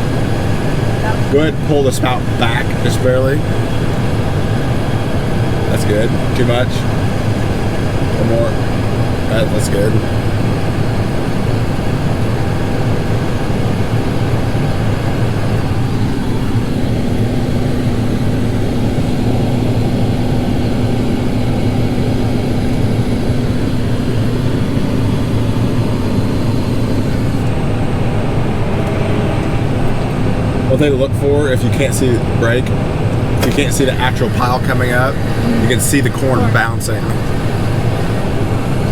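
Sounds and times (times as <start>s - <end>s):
tractor engine running: 0.0s - 38.9s
steady higher tone: 33.1s - 38.9s.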